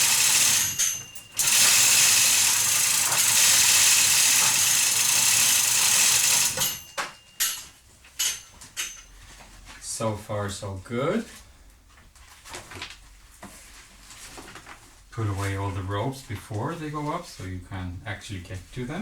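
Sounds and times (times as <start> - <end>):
mechanical running noise: 0.0 - 7.0.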